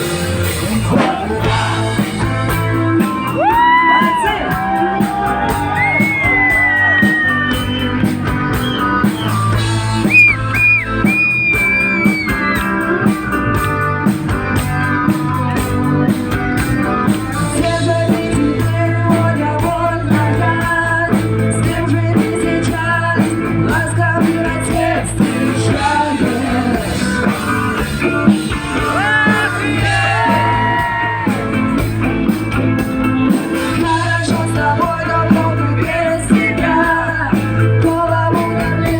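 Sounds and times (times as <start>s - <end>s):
live rock song: 0.0s - 38.9s
person singing: 0.2s - 8.1s, 17.2s - 31.9s, 33.5s - 38.9s.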